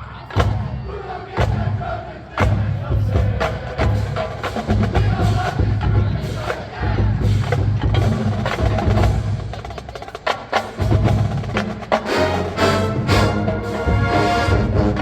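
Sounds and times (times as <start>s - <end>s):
marching band percussion: 0.0s - 15.0s
horns playing sustained chords: 12.1s - 15.0s.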